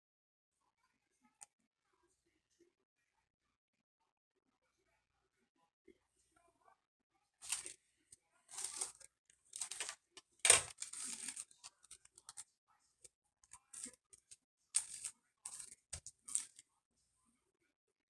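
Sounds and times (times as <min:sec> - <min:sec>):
rustling scraping noises: 0:07.4 - 0:07.7, 0:08.5 - 0:09.0, 0:09.6 - 0:11.7.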